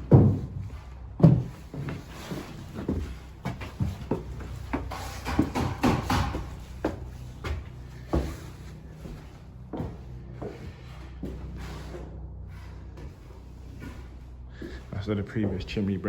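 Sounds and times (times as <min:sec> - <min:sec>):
irregular knocks and clatters: 0:00.0 - 0:08.7
steady low hum: 0:00.0 - 0:16.0.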